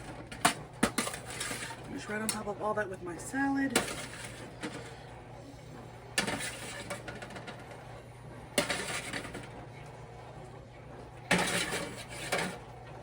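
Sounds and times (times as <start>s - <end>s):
utensils and plates clattering: 0.0s - 2.4s, 3.7s - 5.0s, 6.2s - 7.6s, 8.6s - 9.5s, 11.3s - 12.6s
light scraping: 6.2s - 7.1s, 8.6s - 9.4s, 11.3s - 12.6s.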